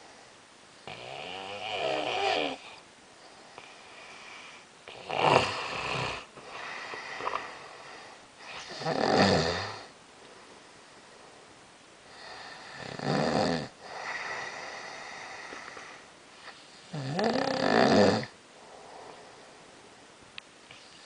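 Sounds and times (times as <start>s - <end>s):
person snoring: 0.8s - 2.8s, 4.9s - 7.6s, 8.4s - 9.9s, 12.2s - 16.0s, 16.9s - 18.4s.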